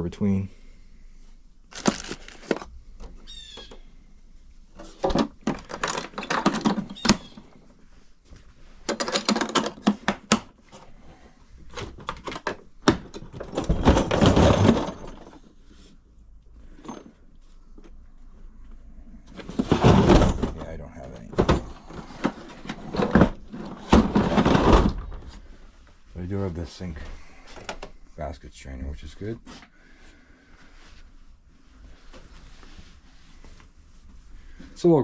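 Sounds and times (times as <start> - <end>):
parts and packaging clattering: 1.7 - 3.8, 4.7 - 15.6, 19.2 - 25.7.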